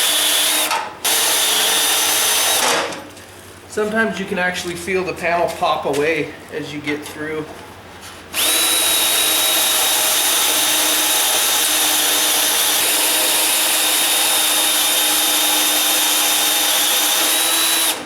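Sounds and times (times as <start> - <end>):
electric drill whining and grinding: 0.0 - 2.8, 8.4 - 18.0.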